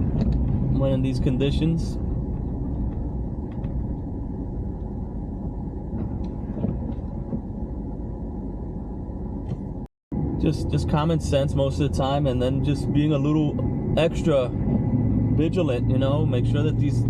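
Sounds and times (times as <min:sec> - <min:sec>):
truck engine and tyre noise: 0:00.0 - 0:17.0.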